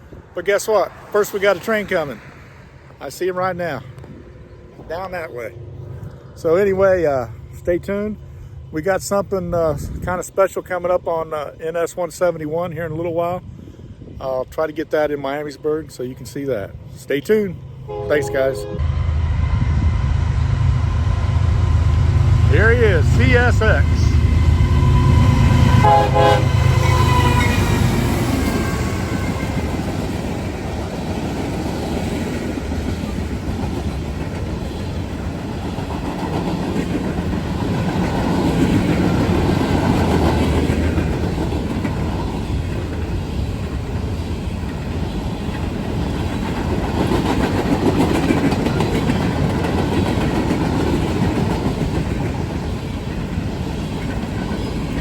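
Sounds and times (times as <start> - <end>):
locomotive engine rumble: 16.6 - 55.0
locomotive air horn: 17.9 - 18.9, 24.0 - 29.7
train wheels clattering on rail: 23.0 - 55.0.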